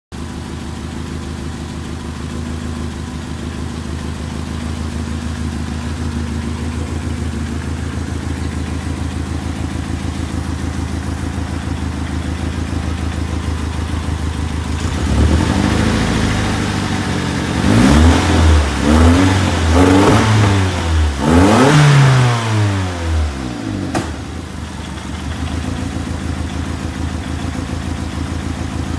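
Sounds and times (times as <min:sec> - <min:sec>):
car engine idling roughly: 0:00.1 - 0:28.9
engine revving: 0:03.7 - 0:24.4.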